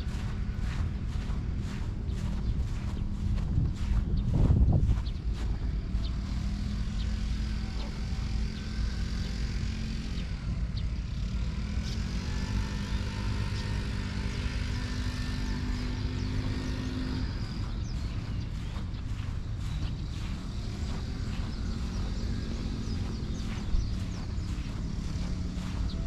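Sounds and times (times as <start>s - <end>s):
low rumble: 0.0s - 6.9s, 15.7s - 26.0s
engine droning: 0.0s - 26.0s.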